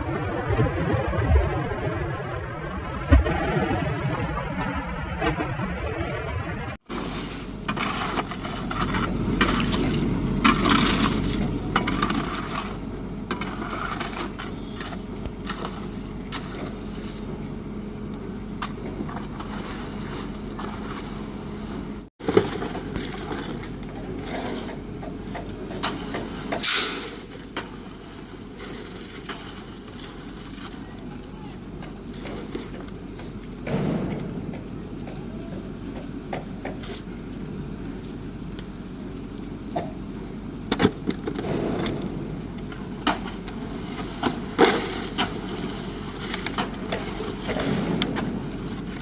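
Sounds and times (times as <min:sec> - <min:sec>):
machinery running: 0:00.0 - 0:49.0
short hiss: 0:26.6 - 0:27.2.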